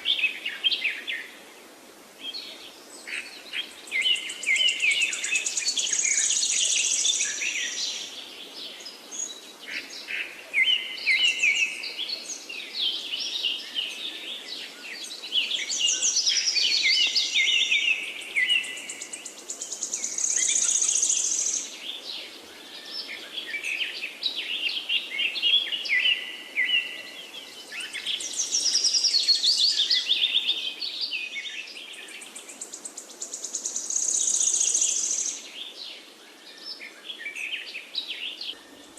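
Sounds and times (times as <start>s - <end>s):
birds singing and calling: 0.0s - 38.9s.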